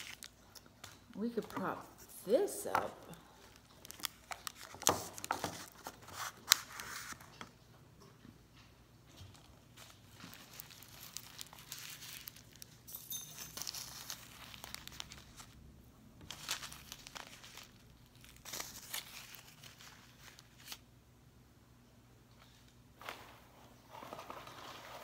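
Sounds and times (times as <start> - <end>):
packaging crinkling and tearing: 0.0 - 2.2, 3.1 - 7.4, 9.3 - 20.9.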